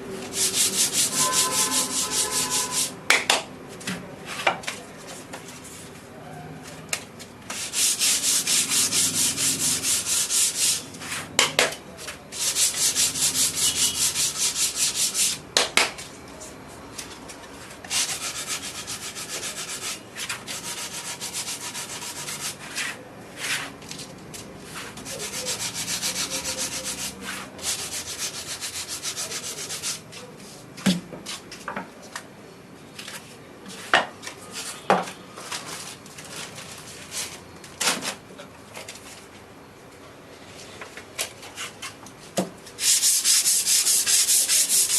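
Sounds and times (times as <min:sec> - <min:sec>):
sandpaper rubbing on wood: 0:00.2 - 0:03.0, 0:07.5 - 0:11.3, 0:12.3 - 0:15.4, 0:17.9 - 0:23.7, 0:24.6 - 0:30.2, 0:42.8 - 0:44.9.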